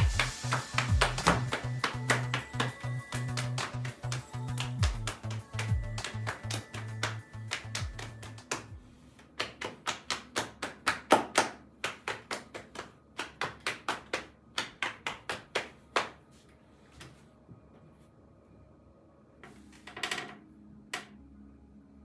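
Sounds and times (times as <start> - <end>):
rhythmic sharp slaps: 0.0 - 8.8, 9.4 - 16.2.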